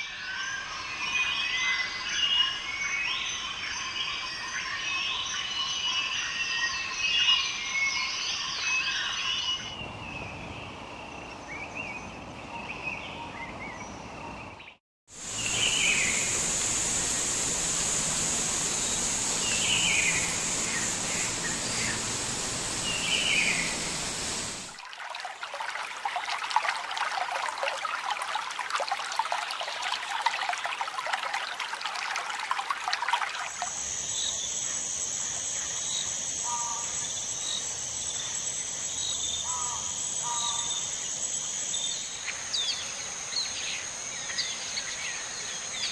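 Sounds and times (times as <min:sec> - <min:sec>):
birds chirping: 0:15.2 - 0:24.8
high insect drone: 0:15.2 - 0:24.8, 0:33.5 - 0:45.9.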